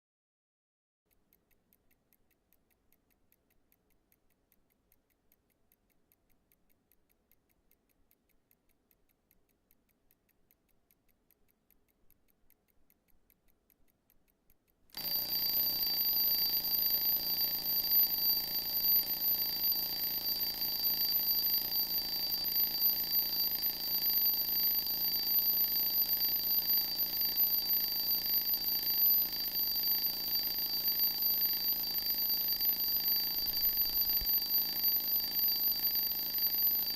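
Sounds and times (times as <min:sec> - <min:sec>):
alarm clock ringing shrilly: 0:15.0 - 0:36.9
alarm clock ticking: 0:15.0 - 0:36.9.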